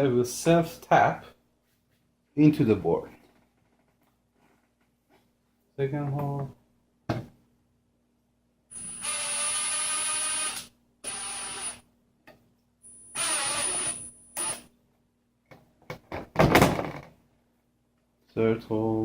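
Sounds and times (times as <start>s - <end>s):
electric screwdriver running: 8.8s - 11.8s, 13.2s - 14.6s.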